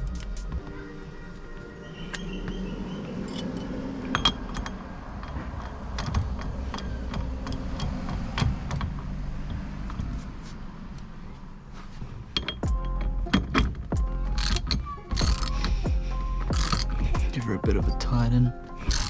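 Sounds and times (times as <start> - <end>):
metal tools clicking and clinking: 3.2 - 10.0, 12.3 - 13.8.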